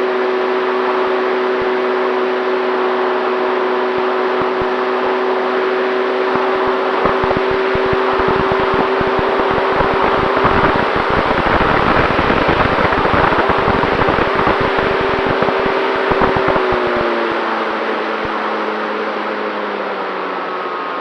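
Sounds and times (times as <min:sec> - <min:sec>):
electric motor and propeller whining: 0:00.0 - 0:21.0
wind buffeting microphone: 0:06.2 - 0:17.1.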